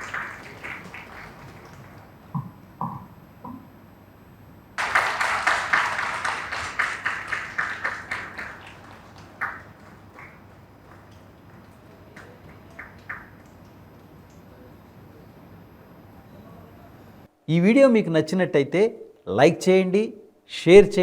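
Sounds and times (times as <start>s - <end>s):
audience clapping: 0.0s - 2.4s, 4.8s - 14.3s.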